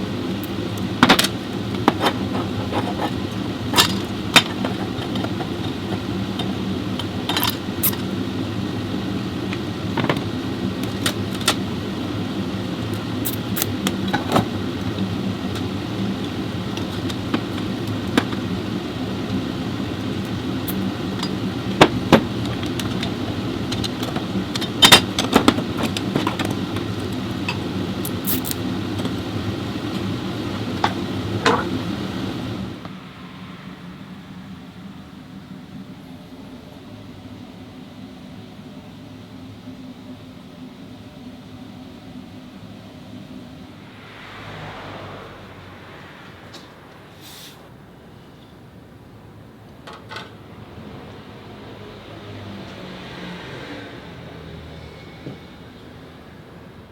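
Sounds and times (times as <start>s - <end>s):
diesel engine running: 0.0s - 37.0s.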